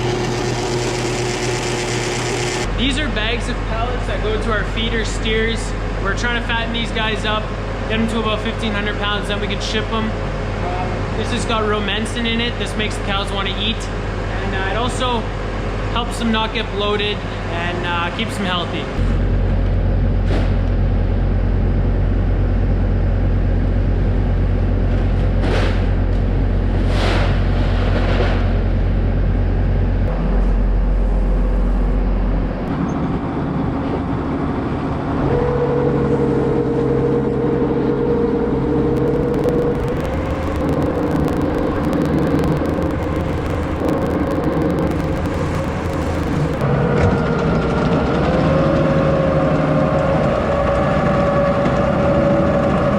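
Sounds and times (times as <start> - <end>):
farm vehicle engine running: 0.0 - 4.0, 19.0 - 49.4
steady high whine: 0.0 - 27.5, 28.4 - 52.9.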